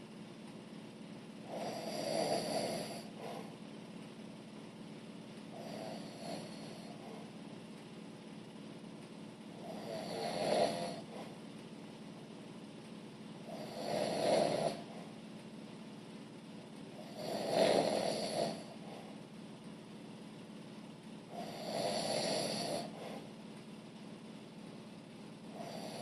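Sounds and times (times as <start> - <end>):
man snoring: 1.4 - 3.5, 5.5 - 7.3, 9.6 - 11.4, 13.4 - 15.1, 17.0 - 19.0, 21.3 - 23.3, 25.5 - 26.0.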